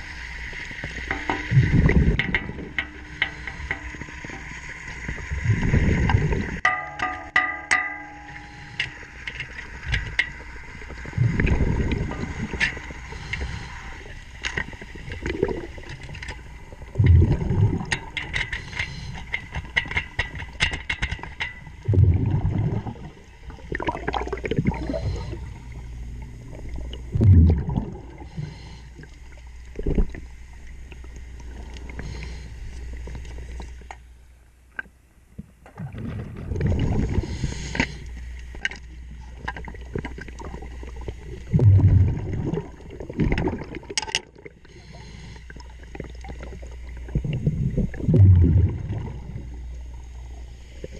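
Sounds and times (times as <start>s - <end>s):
sharp clicks and knocks: 1.0s - 4.5s, 17.9s - 21.6s
rumbling gush of exhaled bubbles: 1.3s - 6.6s, 10.7s - 14.1s, 14.7s - 18.2s, 21.8s - 28.4s, 35.7s - 37.5s, 39.6s - 44.7s, 45.6s - 50.9s
diver breathing through regulator: 12.8s - 14.2s, 18.4s - 19.5s, 24.7s - 25.8s, 28.1s - 29.1s, 31.5s - 32.8s, 36.9s - 38.2s, 44.6s - 45.6s.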